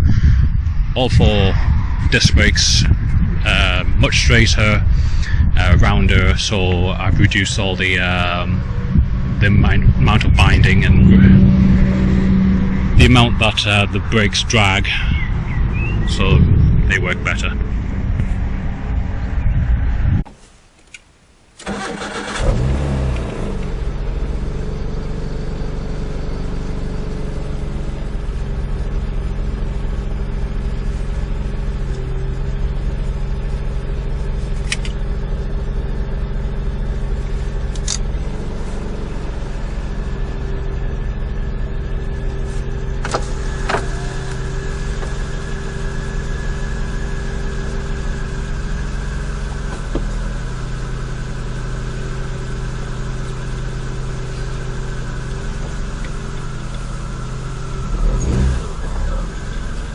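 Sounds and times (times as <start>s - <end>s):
car engine starting and idling: 0.0s - 20.3s, 20.9s - 59.9s
sharp clicks: 37.7s - 38.0s.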